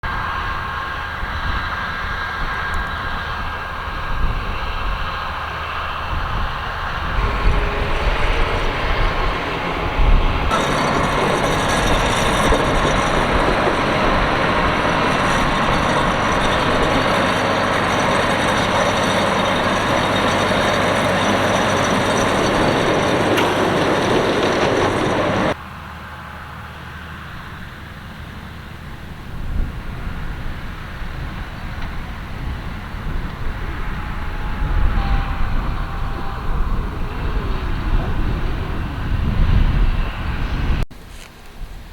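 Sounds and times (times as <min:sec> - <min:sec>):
tractor engines under load: 0:00.3 - 0:40.0
harvester machinery rattling: 0:05.4 - 0:25.6.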